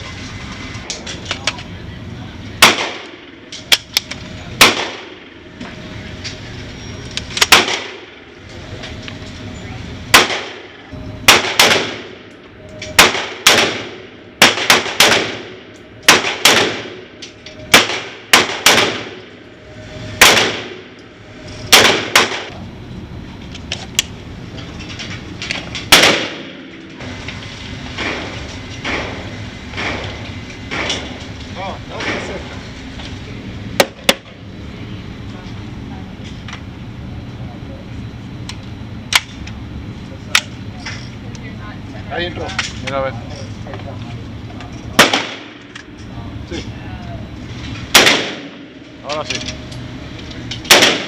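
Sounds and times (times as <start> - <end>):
gunshots: 2.6 - 3.2, 4.6 - 5.3, 7.4 - 8.2, 10.1 - 12.2, 12.9 - 17.1, 17.7 - 19.2, 20.2 - 20.9, 21.7 - 22.6, 25.9 - 26.7, 45.0 - 45.6, 47.9 - 48.7, 50.7 - 51.0.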